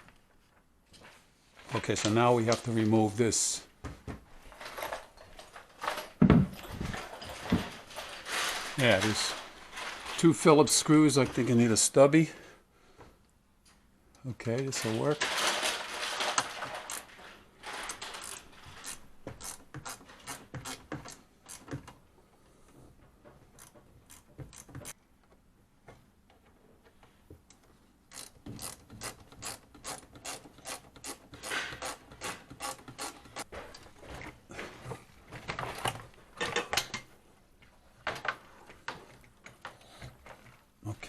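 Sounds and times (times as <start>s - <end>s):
screwdriver ratchet clicks: 16.9s - 17.1s, 28.1s - 31.2s, 31.8s - 33.4s.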